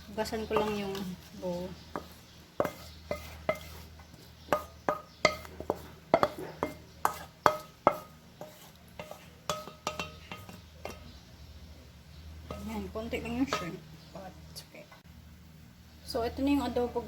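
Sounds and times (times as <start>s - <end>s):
bowl and utensils clinking: 4.5s - 11.2s.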